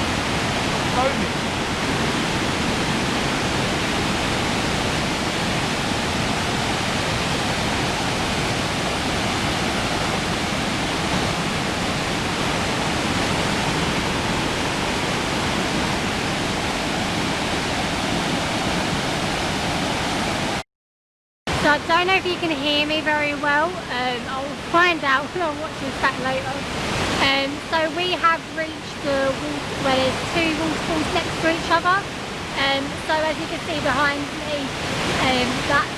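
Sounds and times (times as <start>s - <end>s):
waterfall and river rushing: 0.0s - 20.6s, 21.5s - 35.9s.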